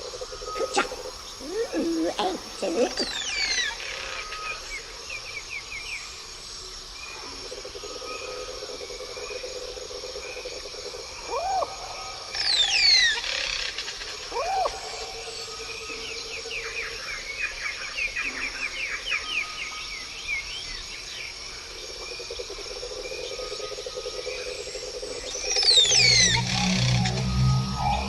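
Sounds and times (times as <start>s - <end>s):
insect and frog trilling: 0.0s - 28.0s
birds chirping: 0.5s - 3.8s, 25.2s - 28.0s
high falling whistle: 25.4s - 28.0s
low droning tone: 25.4s - 28.0s.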